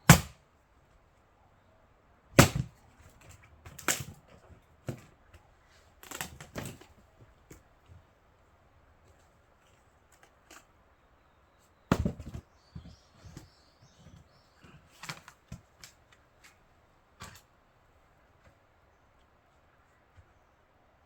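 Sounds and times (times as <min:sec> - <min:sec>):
axe striking wood: 0:00.0 - 0:00.4, 0:02.4 - 0:02.8
split firewood clattering: 0:02.4 - 0:05.4, 0:06.0 - 0:07.7, 0:11.9 - 0:16.6.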